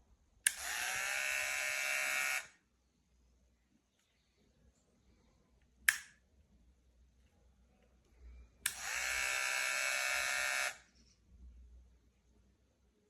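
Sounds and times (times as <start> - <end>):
hair clipper buzzing: 0.5 - 2.6, 8.7 - 10.8
sharp plastic click: 5.9 - 6.2.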